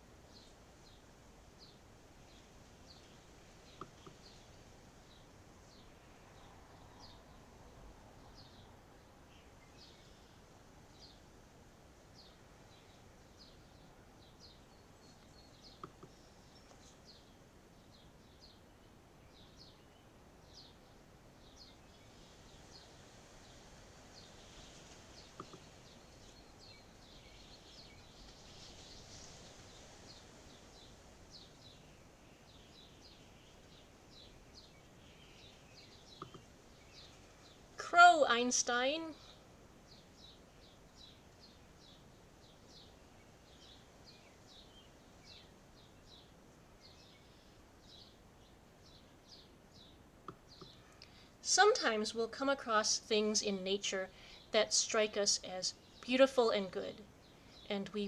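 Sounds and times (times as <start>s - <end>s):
birds chirping: 12.2s - 58.0s.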